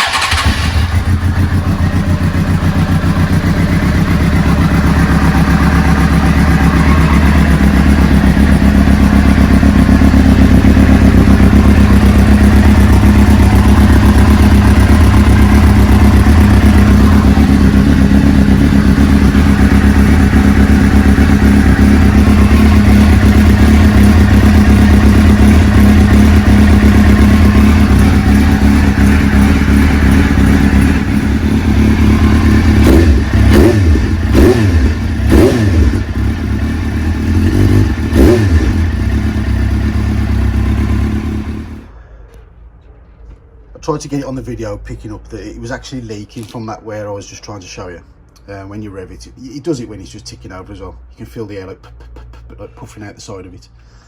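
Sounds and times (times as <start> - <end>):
motorcycle engine running: 0.0 - 42.0.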